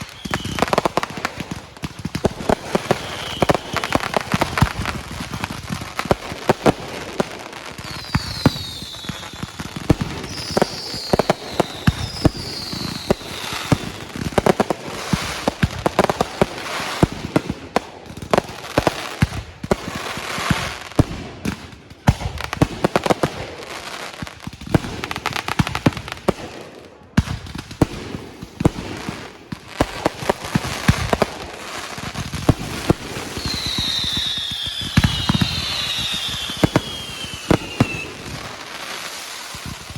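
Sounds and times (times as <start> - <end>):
fireworks falling whistles: 0.0 - 17.2, 28.6 - 39.9
fireworks bangs and crackling: 0.0 - 39.9.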